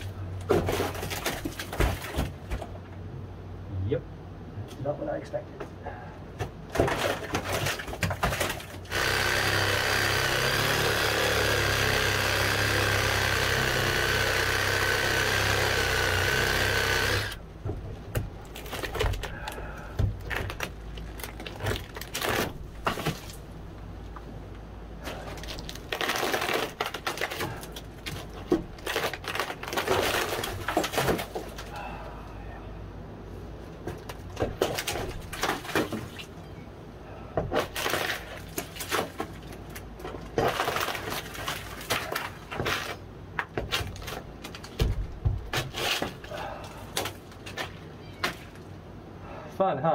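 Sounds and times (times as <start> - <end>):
power tool motor running: 8.9 - 17.4.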